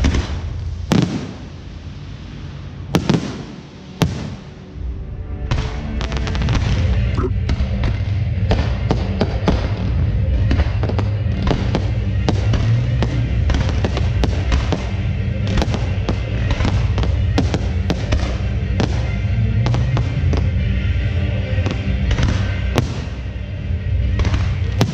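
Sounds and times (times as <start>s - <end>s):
fireworks popping and banging: 0.0s - 1.6s, 8.5s - 20.5s
loud music with heavy bass: 7.2s - 7.5s.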